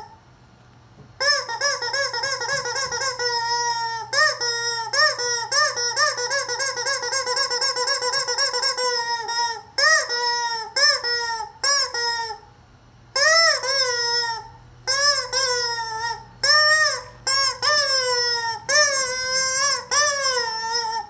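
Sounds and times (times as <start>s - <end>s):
rubber chicken toy squeaking: 1.2s - 12.5s, 13.2s - 21.0s.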